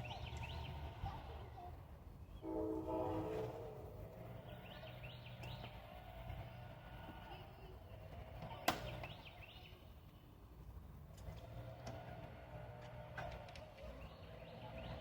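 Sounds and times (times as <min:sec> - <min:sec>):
small birds chirping: 0:00.0 - 0:02.5, 0:04.3 - 0:10.4, 0:13.3 - 0:15.0.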